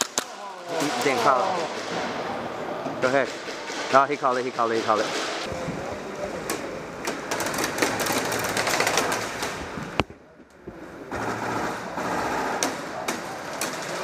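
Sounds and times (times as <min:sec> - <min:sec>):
sharp crack: 0:00.0 - 0:01.3.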